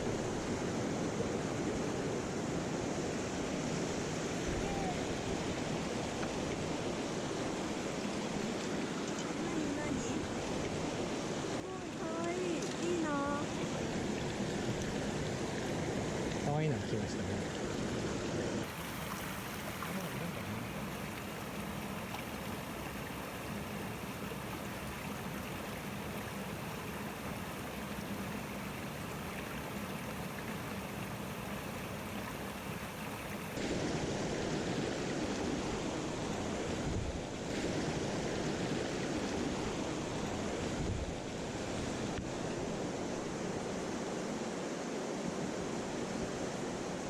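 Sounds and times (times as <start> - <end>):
mountain stream water rushing: 18.6 - 33.6.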